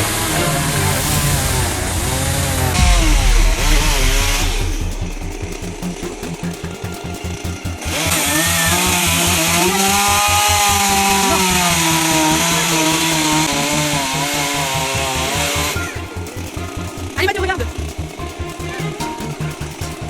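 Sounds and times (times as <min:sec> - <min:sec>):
two-stroke chainsaw running hard: 0:06.5 - 0:16.2.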